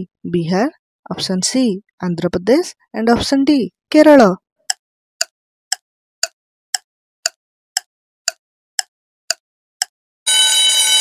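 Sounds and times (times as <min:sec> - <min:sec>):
clock ticking: 0:04.7 - 0:10.0
buzzing alarm tone: 0:10.3 - 0:11.0.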